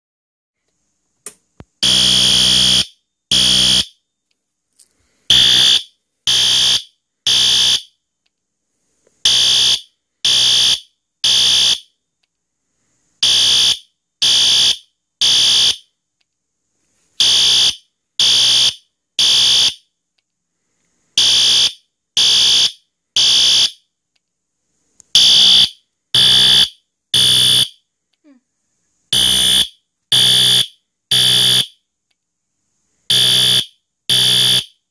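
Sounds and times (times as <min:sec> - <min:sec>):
fire alarm horn blasts: 0:01.8 - 0:04.0, 0:05.3 - 0:07.9, 0:09.3 - 0:11.9, 0:13.2 - 0:15.9, 0:17.2 - 0:19.8, 0:21.2 - 0:23.8, 0:25.2 - 0:27.8, 0:29.1 - 0:31.8, 0:33.1 - 0:34.8.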